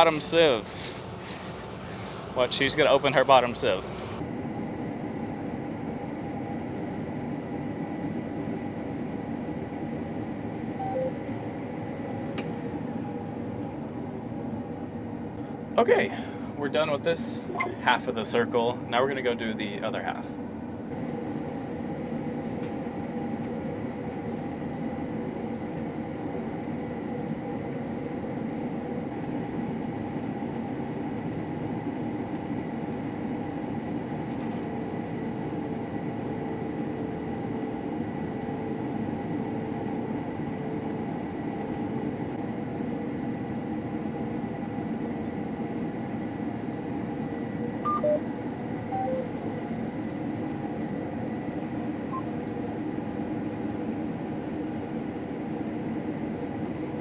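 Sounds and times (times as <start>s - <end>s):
combine harvester drone: 0.0s - 57.0s
short electronic beeps: 10.8s - 11.2s, 17.5s - 17.8s, 47.9s - 48.2s, 48.9s - 49.3s.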